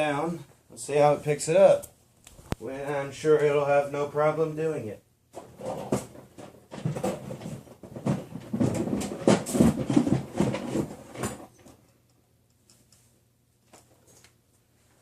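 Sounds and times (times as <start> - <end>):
knocks and clatters of handling: 5.3 - 14.4.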